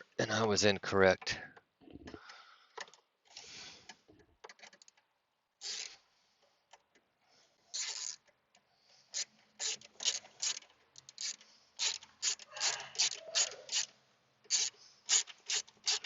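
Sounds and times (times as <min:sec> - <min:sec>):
hand ratchet clicking: 0:05.6 - 0:06.0, 0:07.7 - 0:08.4, 0:09.1 - 0:16.0.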